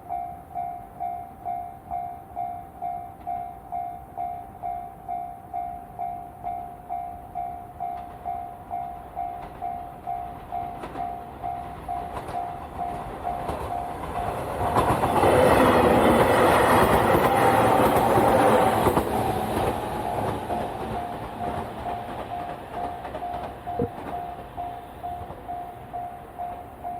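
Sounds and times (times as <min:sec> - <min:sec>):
level crossing alarm bell ringing: 0:00.0 - 0:14.6, 0:19.5 - 0:26.9
train wheels clattering and rumbling: 0:09.4 - 0:26.9.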